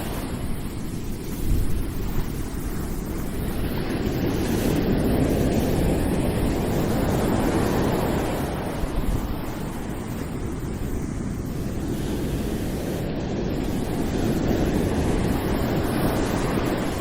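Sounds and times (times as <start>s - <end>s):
ocean waves breaking: 0.0s - 17.0s
wind rumble on microphone: 0.0s - 17.0s.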